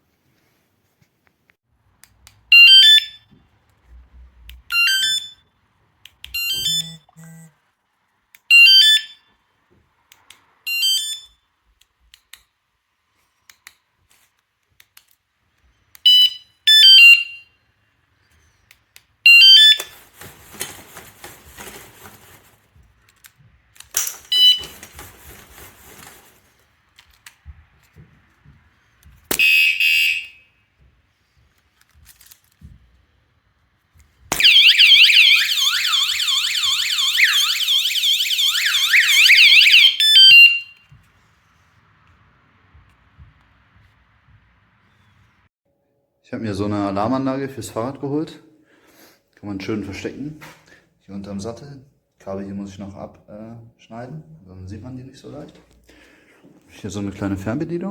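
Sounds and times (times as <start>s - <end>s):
warbling alarm siren: 4.7s - 5.4s, 29.4s - 30.5s, 34.3s - 40.9s
warning beep: 6.4s - 7.5s.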